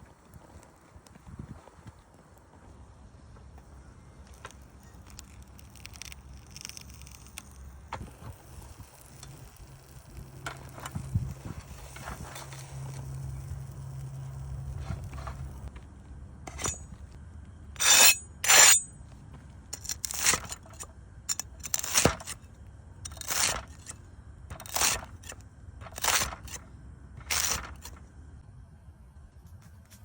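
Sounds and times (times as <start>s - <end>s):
crunching toasted sandwich: 4.2s - 15.6s.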